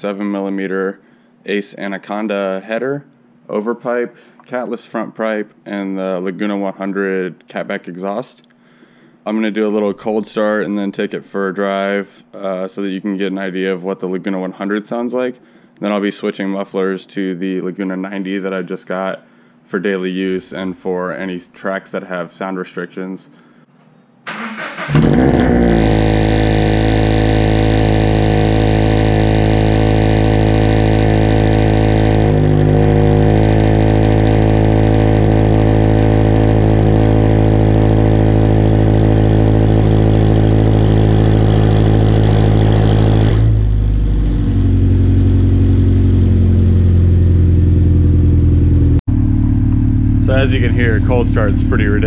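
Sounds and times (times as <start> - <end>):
car engine idling: 24.6 - 52.0.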